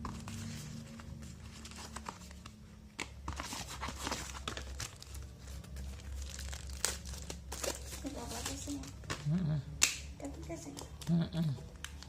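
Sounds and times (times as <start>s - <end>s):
low steady hum: 0.0s - 12.0s
packaging crinkling: 3.2s - 9.2s.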